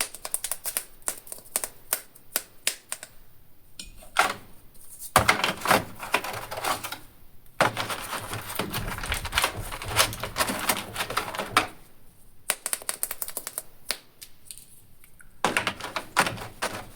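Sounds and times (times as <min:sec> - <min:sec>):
plastic packaging crackling: 0:05.2 - 0:11.8, 0:15.4 - 0:16.9.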